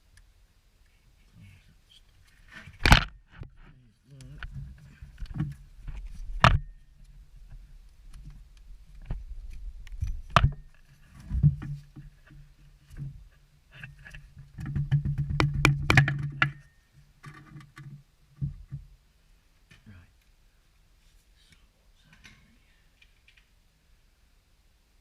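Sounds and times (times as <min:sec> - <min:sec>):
rustling: 0:00.8 - 0:19.0.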